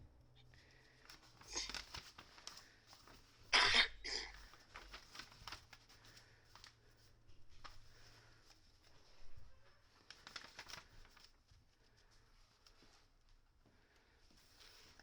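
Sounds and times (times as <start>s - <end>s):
faint handling and rustling: 0.0s - 15.0s
person coughing: 1.5s - 1.8s, 3.6s - 4.4s.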